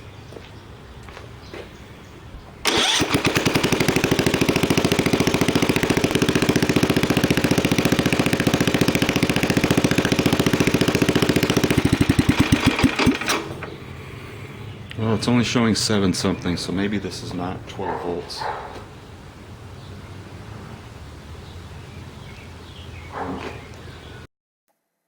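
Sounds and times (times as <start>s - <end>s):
riding mower engine running: 2.6s - 15.6s.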